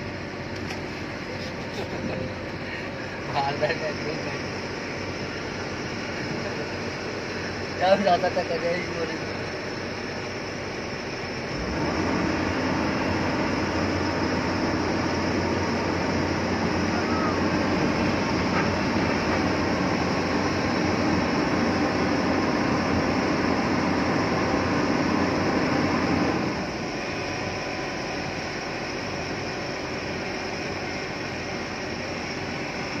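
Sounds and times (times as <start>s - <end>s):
excavator diesel engine running: 0.0s - 33.0s.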